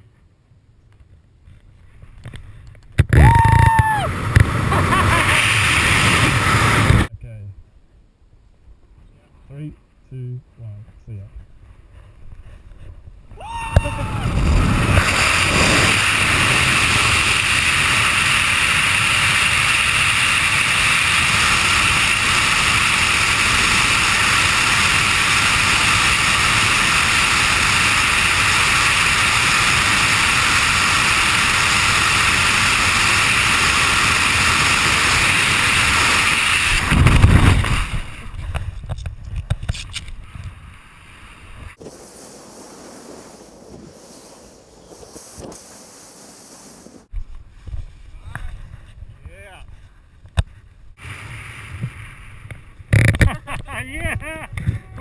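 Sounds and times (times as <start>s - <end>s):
wind roaring over microphone: 3.1s - 7.1s, 12.4s - 53.2s.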